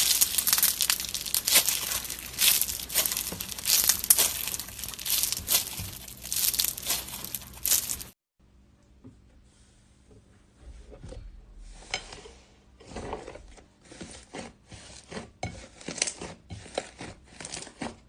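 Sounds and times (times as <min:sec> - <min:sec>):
slime squeezed with crackling pops: 0:00.0 - 0:08.1
faint handling sounds: 0:00.0 - 0:08.2.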